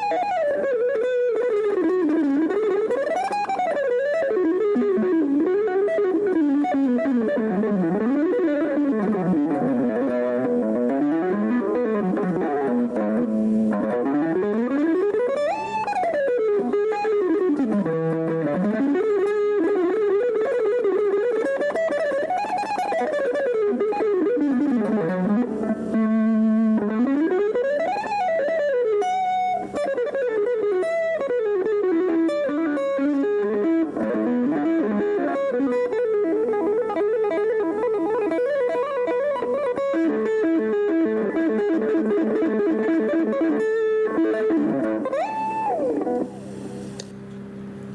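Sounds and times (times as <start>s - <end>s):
plucked string instrument sliding: 0.0s - 47.5s.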